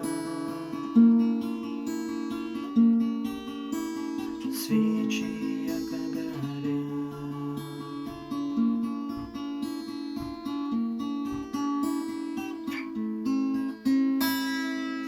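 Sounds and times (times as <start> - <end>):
acoustic guitar picked notes: 0.0 - 15.0
strummed guitar chord: 0.0 - 15.0.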